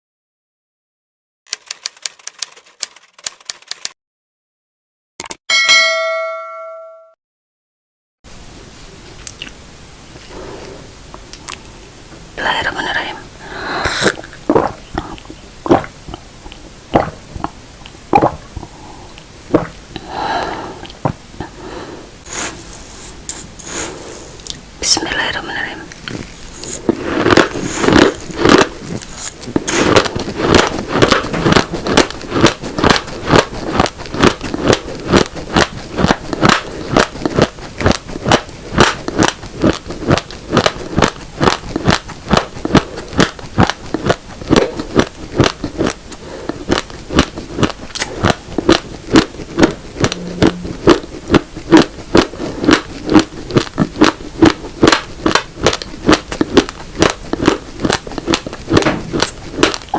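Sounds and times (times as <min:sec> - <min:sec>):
raw rice grains being chewed: 0:13.9 - 0:20.1, 0:22.2 - 0:24.6, 0:25.8 - 0:59.9.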